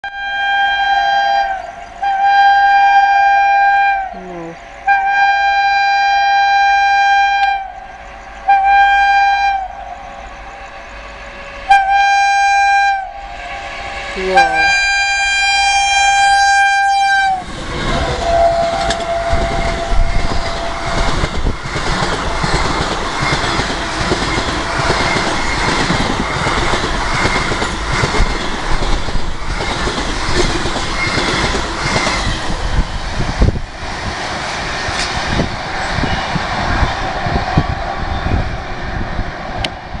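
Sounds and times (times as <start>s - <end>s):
locomotive horn blaring: 0.0s - 10.1s, 10.9s - 21.2s
train wheels clattering over rail joints: 17.5s - 36.7s.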